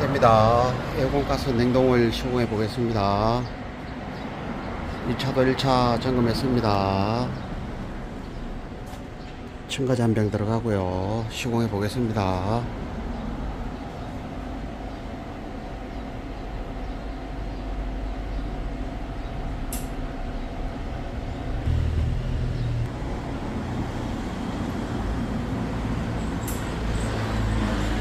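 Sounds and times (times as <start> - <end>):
equipment humming: 13.8 - 24.8
sharp click: 19.7 - 20.0, 26.4 - 26.7.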